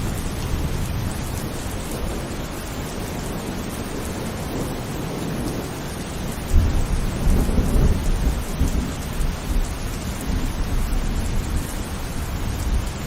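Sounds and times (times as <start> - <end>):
heavy rain falling: 0.0 - 13.0
thunder rumbling: 0.0 - 13.0.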